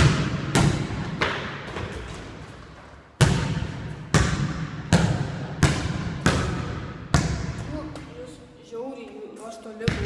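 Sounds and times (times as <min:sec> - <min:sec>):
basketball bouncing on hard floor: 0:00.0 - 0:07.7.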